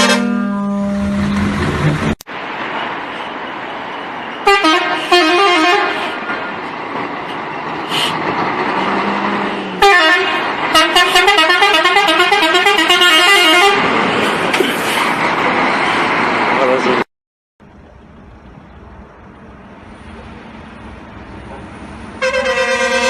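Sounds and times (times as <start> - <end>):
musical vehicle horn: 0.0 - 1.6, 4.4 - 6.2, 9.8 - 13.9, 22.2 - 23.0.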